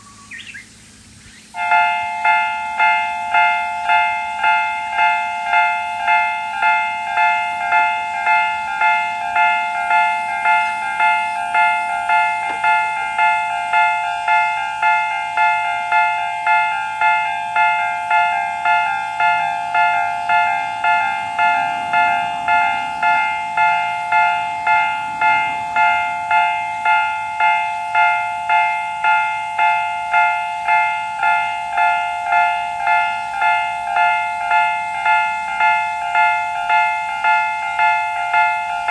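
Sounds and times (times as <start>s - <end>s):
level-crossing warning bell: 0.0s - 38.9s.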